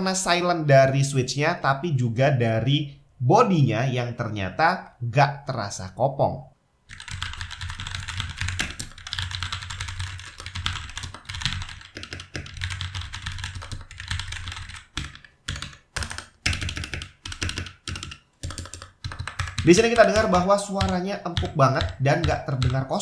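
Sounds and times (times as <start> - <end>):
soft mechanical keyboard typing: 6.9 - 23.0.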